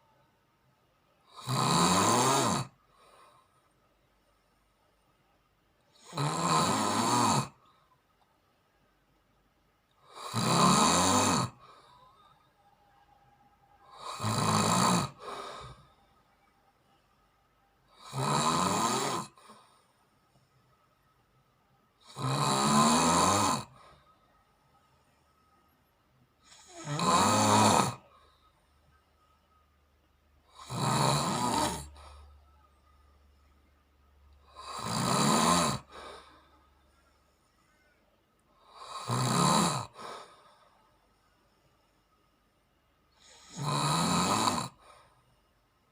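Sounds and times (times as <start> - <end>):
quiet breathing: 0.0 - 1.4, 2.7 - 6.2, 7.5 - 10.4, 11.5 - 18.2, 18.8 - 22.2, 23.6 - 27.0, 27.9 - 30.9, 31.5 - 35.0, 35.6 - 45.9
person snoring: 1.3 - 3.4, 6.0 - 7.7, 10.0 - 12.0, 13.8 - 16.0, 17.9 - 19.8, 22.0 - 24.1, 26.4 - 28.2, 30.4 - 32.3, 34.4 - 36.6, 38.6 - 40.7, 43.2 - 45.2.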